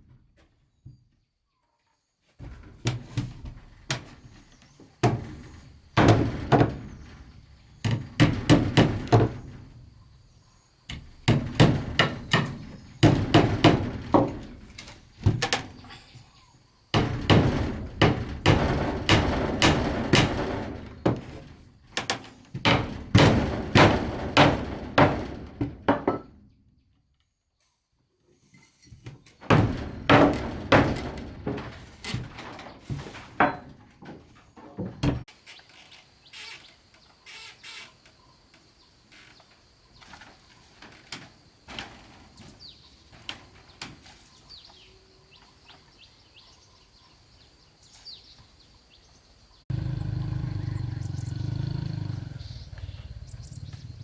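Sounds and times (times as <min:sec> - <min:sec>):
tool striking wood: 0:16.9 - 0:21.4.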